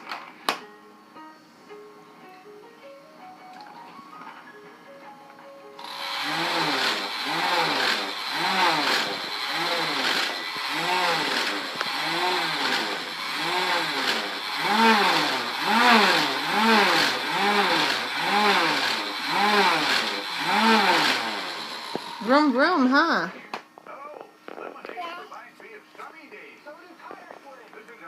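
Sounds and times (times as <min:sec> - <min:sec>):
toy lawnmower engine revving: 0:05.8 - 0:22.8.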